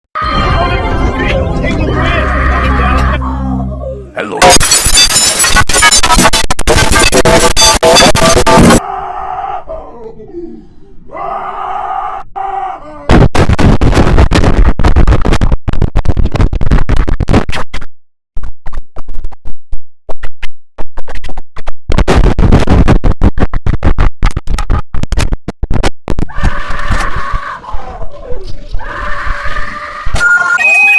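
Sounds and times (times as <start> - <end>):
loud distorted stuttering sound: 4.4 - 8.8, 13.1 - 17.6
pitched chime: 30.6 - 30.9.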